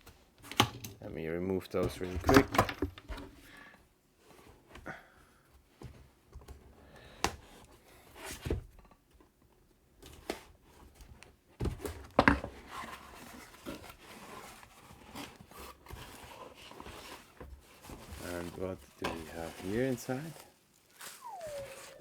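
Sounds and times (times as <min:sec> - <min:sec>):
packaging tearing and rustling: 0:13.3 - 0:22.0.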